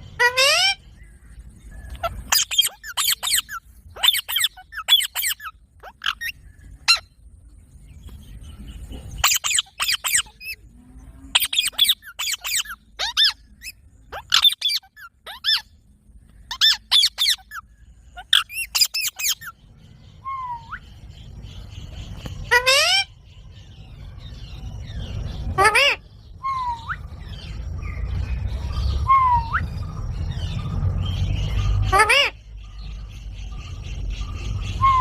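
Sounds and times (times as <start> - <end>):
parakeet shrill screeches: 0.2 - 0.8, 2.0 - 7.1, 9.2 - 10.6, 11.3 - 15.7, 16.5 - 17.6, 18.2 - 19.5, 22.5 - 23.1.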